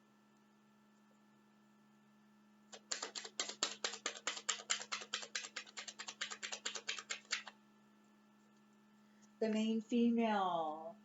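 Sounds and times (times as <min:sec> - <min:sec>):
rapid sharp clicks: 0:02.7 - 0:07.6.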